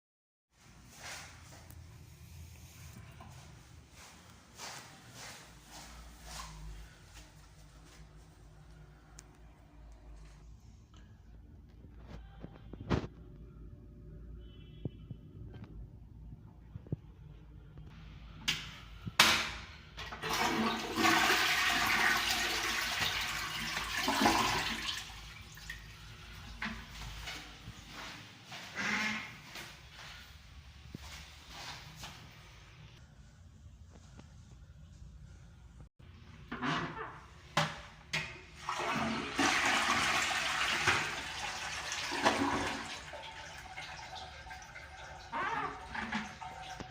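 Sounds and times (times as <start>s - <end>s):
toilet flushing water rush: 20.0s - 25.8s, 38.6s - 46.9s.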